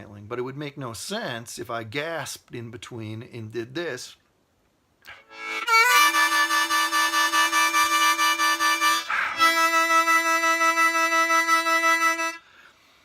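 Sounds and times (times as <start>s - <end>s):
harmonica notes: 5.1s - 12.7s
quick gasp of breath: 9.0s - 9.5s, 12.4s - 13.0s.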